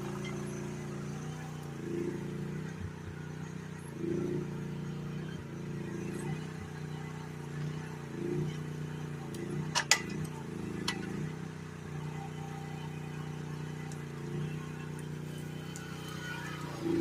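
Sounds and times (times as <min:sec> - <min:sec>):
excavator engine running: 0:00.0 - 0:17.0
sharp metallic clanks: 0:09.7 - 0:11.2.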